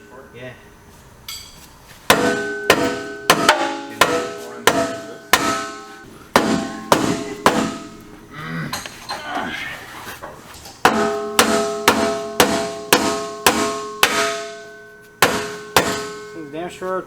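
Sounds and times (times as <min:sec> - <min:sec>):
hammer blows on steel: 0:02.1 - 0:08.0, 0:10.8 - 0:16.8.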